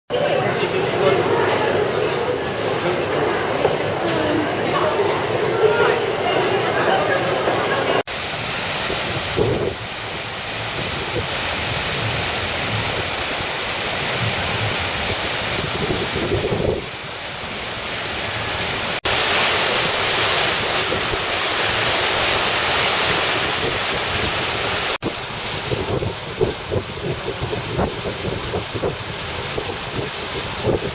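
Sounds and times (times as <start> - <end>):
water fountain splashing: 0.1 - 30.9.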